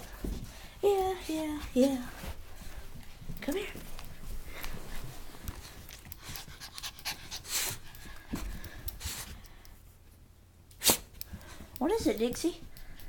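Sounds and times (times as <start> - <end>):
small dog panting: 4.4 - 9.4.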